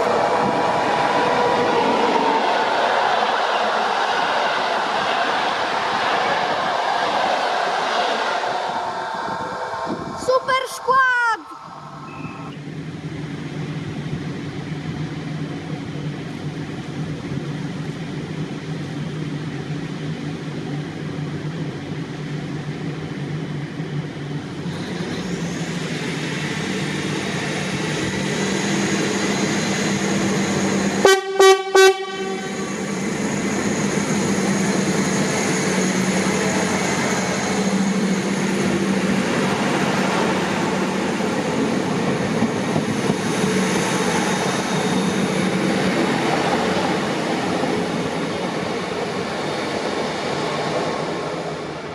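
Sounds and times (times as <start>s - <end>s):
train running: 0.0s - 51.9s
train horn blasts: 31.0s - 33.0s.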